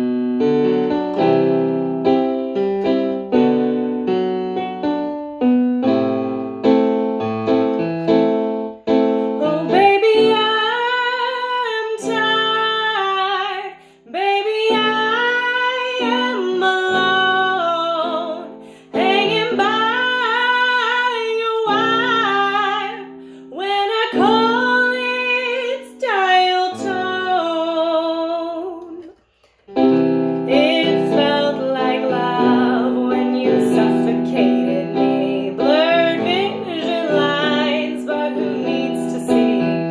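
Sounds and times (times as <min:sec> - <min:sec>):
piano: 0:00.0 - 0:39.9
woman singing: 0:09.4 - 0:29.2, 0:30.4 - 0:39.9.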